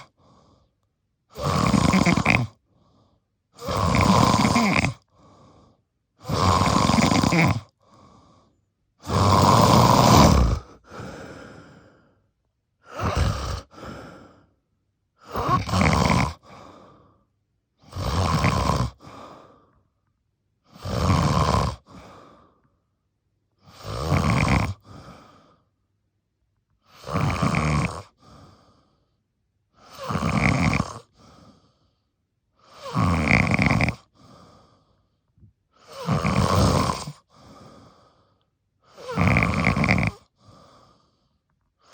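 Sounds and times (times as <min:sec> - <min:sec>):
person snoring deeply: 0:01.3 - 0:02.6, 0:03.6 - 0:05.6, 0:06.2 - 0:08.0, 0:09.0 - 0:12.0, 0:12.8 - 0:14.2, 0:15.2 - 0:17.1, 0:17.8 - 0:19.6, 0:20.7 - 0:22.4, 0:23.6 - 0:25.6, 0:26.9 - 0:28.4, 0:29.9 - 0:31.2, 0:32.6 - 0:34.6, 0:35.8 - 0:38.0, 0:38.9 - 0:41.1.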